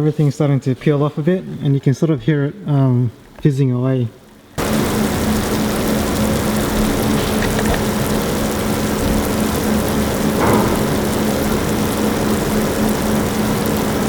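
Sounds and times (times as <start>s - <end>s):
steady low hum: 10.1s - 13.3s.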